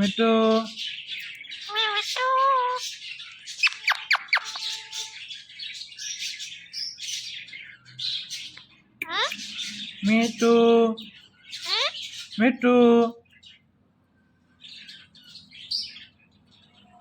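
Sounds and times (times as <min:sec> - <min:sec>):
parrot calling: 0:00.0 - 0:05.4, 0:08.2 - 0:12.4
small birds chirping: 0:00.0 - 0:17.0.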